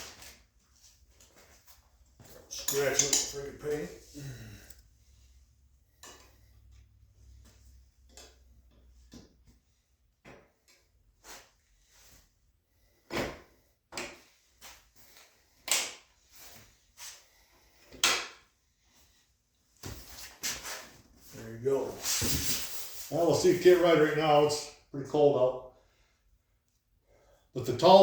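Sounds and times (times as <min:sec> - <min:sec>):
hard parts clicking and knocking: 0:02.5 - 0:03.5.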